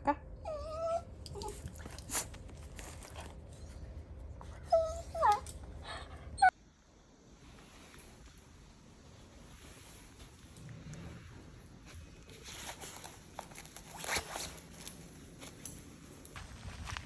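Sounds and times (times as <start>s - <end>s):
dog whining: 0.4s - 2.2s, 4.4s - 6.5s.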